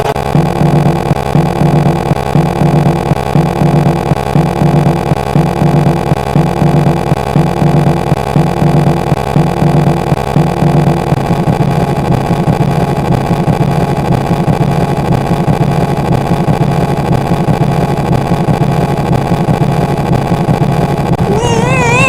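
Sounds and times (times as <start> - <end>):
engine running steadily: 0.0 - 22.0
warbling siren wail: 21.2 - 22.0.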